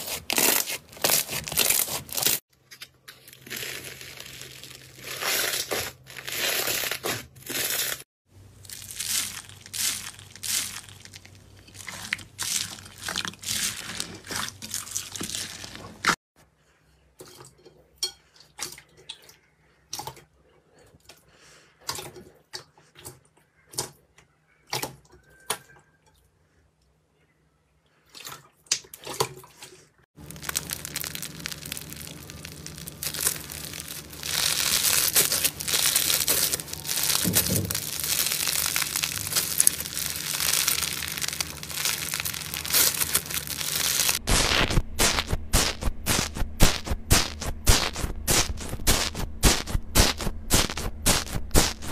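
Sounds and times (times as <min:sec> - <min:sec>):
slime crackling and popping: 0:03.4 - 0:08.0, 0:08.6 - 0:16.2, 0:30.2 - 0:51.9.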